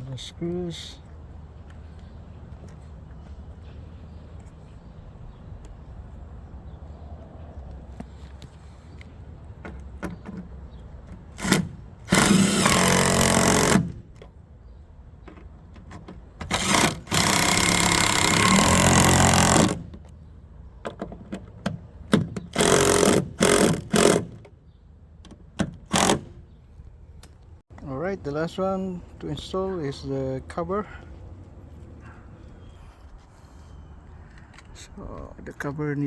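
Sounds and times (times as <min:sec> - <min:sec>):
drill driving screws: 0:11.4 - 0:14.0, 0:16.4 - 0:19.9, 0:22.5 - 0:24.4, 0:25.8 - 0:26.4.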